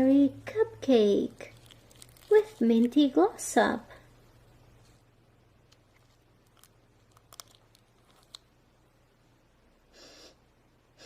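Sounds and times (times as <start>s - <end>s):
soft rustle: 1.3s - 3.2s, 4.7s - 5.1s.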